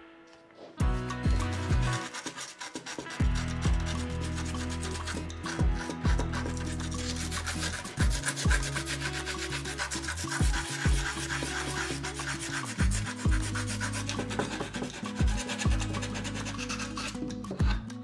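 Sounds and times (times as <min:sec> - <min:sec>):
kick drum thumps: 0:00.8 - 0:01.9, 0:05.6 - 0:06.3, 0:08.0 - 0:08.6, 0:12.8 - 0:13.4, 0:15.2 - 0:15.8, 0:17.6 - 0:17.9
deep bass line: 0:00.8 - 0:02.1, 0:03.2 - 0:18.0
rasping high rhythm: 0:00.8 - 0:18.0.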